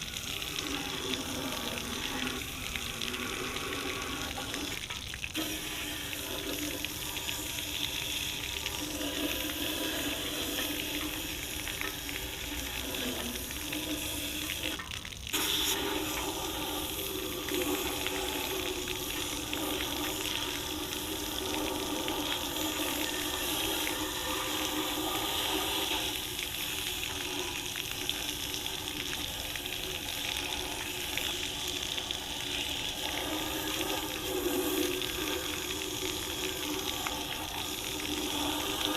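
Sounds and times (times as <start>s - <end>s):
pressure washer spraying water: 5.4s - 27.3s.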